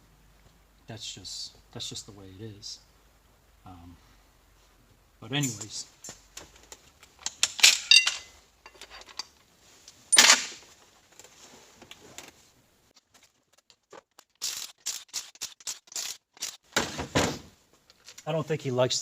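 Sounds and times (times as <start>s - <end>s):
metal tools clinking and clattering: 7.2s - 9.3s, 10.1s - 10.5s.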